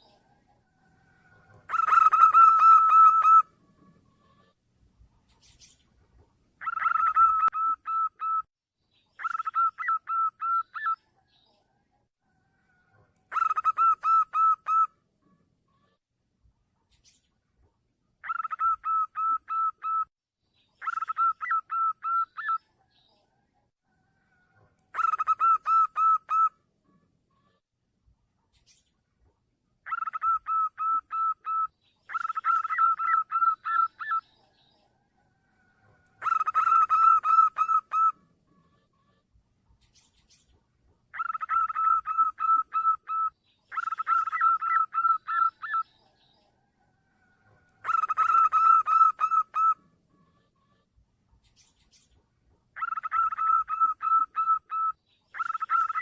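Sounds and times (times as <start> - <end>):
dove cooing: 1.3 - 3.6, 6.6 - 8.4, 9.2 - 11.0, 13.3 - 14.9, 18.2 - 20.1, 24.3 - 26.5, 29.8 - 34.3, 35.6 - 39.0, 41.1 - 45.9, 47.2 - 49.8, 52.8 - 56.0.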